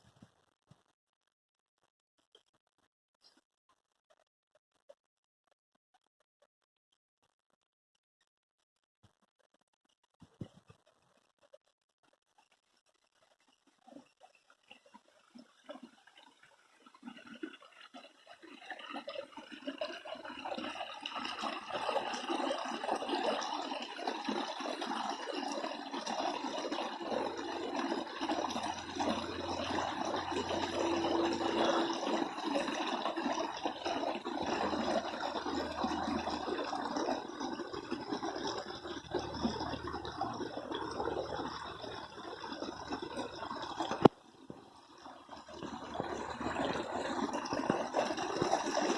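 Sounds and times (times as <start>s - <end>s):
water rushing and splashing: 21.0s - 44.1s.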